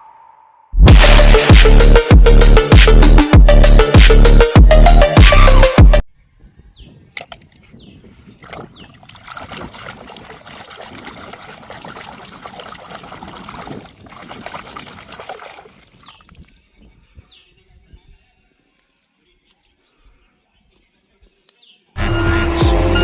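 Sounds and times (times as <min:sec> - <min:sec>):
water pouring and splashing: 0:08.4 - 0:16.8.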